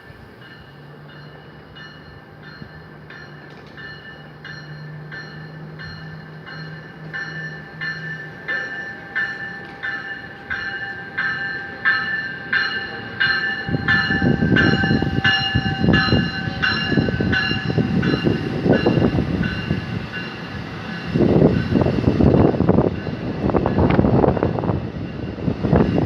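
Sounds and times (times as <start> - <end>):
low rumble of moving train: 0.0 - 26.0
train warning bell ringing: 0.0 - 26.0
wind buffeting microphone: 13.2 - 26.0.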